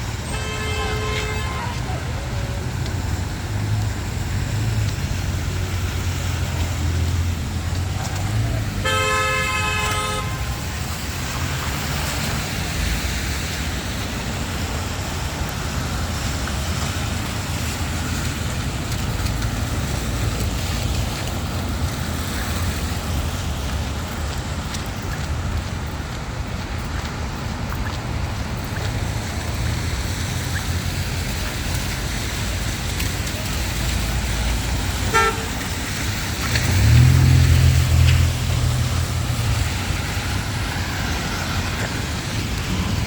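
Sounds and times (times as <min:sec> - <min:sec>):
passing traffic: 0:00.0 - 0:43.0
vehicle horn: 0:00.2 - 0:02.0, 0:08.8 - 0:10.6, 0:35.1 - 0:35.6.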